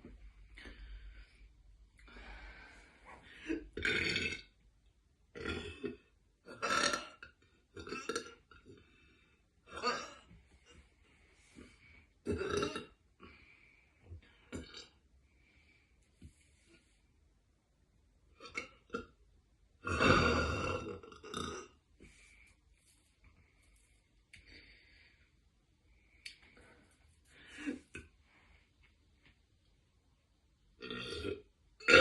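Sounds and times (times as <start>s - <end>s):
woman burping: 3.4s - 4.6s, 5.4s - 8.4s, 9.7s - 10.3s, 12.2s - 13.0s, 19.8s - 21.8s, 30.8s - 32.0s.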